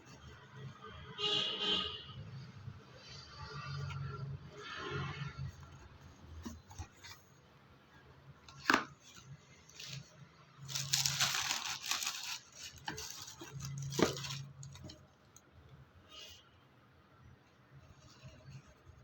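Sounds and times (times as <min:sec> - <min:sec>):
packaging rustling and tearing: 0:10.6 - 0:15.0.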